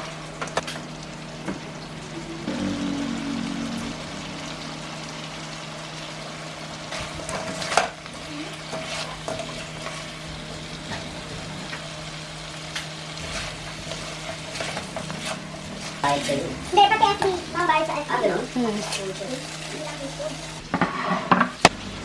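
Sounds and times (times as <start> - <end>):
food sizzling in a pan: 0.0 - 22.0
utensil scraping a pan: 8.6 - 12.0, 12.8 - 17.3, 20.6 - 21.7.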